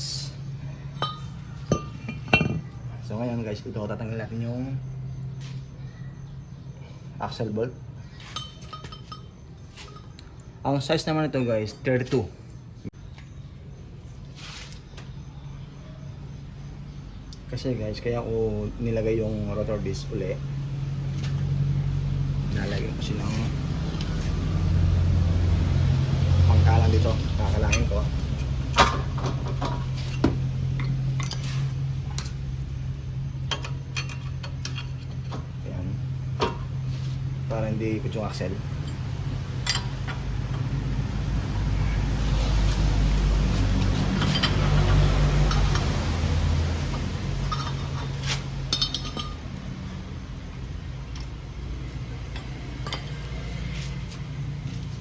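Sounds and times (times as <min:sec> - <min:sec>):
steady low hum: 0:00.0 - 0:10.6
metal tools clinking: 0:01.0 - 0:02.9, 0:08.2 - 0:10.3, 0:27.5 - 0:32.4, 0:33.5 - 0:35.6, 0:38.7 - 0:40.8, 0:43.8 - 0:46.0, 0:47.4 - 0:49.7, 0:52.3 - 0:53.7.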